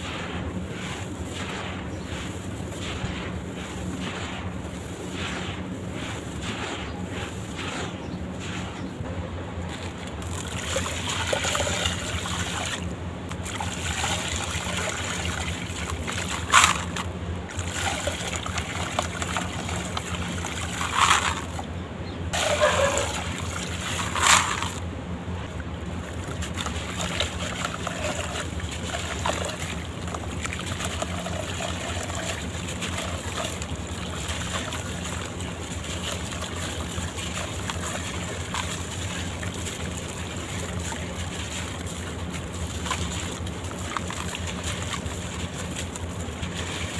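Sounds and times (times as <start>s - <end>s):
blocks crumbling in water: 9.6s - 21.7s, 22.4s - 24.8s, 26.0s - 46.9s
sharp crunches or splashes: 9.6s - 21.7s, 22.3s - 24.8s, 26.0s - 46.9s.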